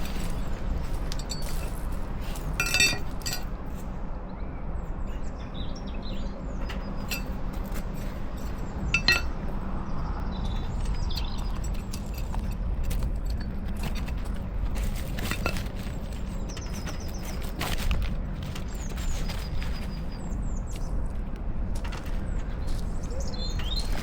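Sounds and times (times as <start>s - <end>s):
ringing metallic clinks: 2.6s - 3.5s, 7.0s - 9.5s.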